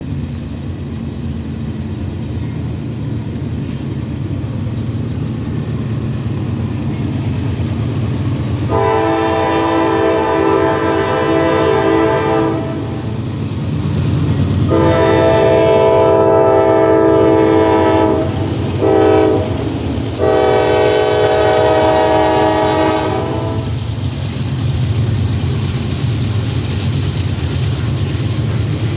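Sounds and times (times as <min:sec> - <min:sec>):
locomotive rumbling on track: 0:00.0 - 0:28.9
multi-note train horn: 0:08.6 - 0:13.2, 0:14.6 - 0:23.9.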